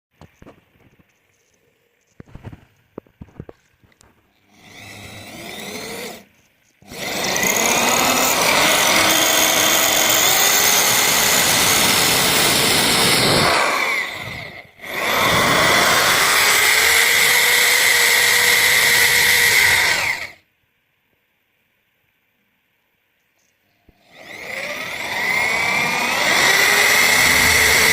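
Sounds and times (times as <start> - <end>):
electric power tool running: 4.5 - 20.4, 24.0 - 27.9.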